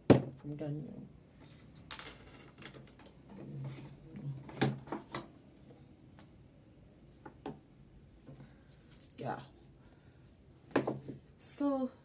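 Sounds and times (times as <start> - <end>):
objects clicking and knocking: 1.8 - 3.2.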